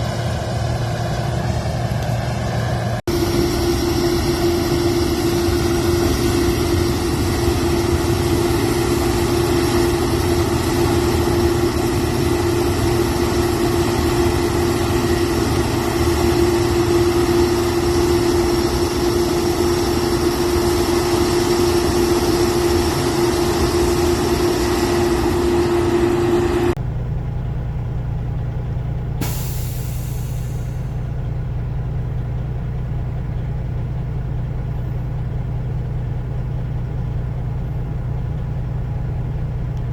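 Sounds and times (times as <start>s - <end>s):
machine whine: 0.0s - 27.4s
low engine rumble: 0.0s - 39.9s
brief hiss: 29.2s - 31.1s.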